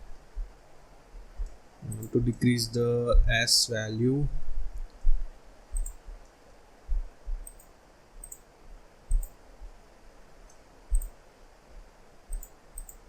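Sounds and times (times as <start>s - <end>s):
mouse and keyboard clicks: 5.8s - 6.0s, 7.5s - 8.4s, 9.1s - 9.4s, 10.9s - 11.1s, 12.3s - 13.0s.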